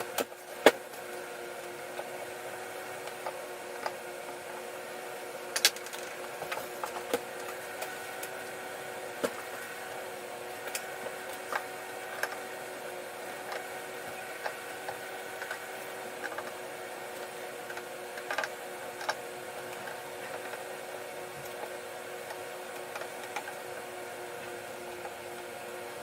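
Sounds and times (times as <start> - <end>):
steady hum: 0.0 - 1.0.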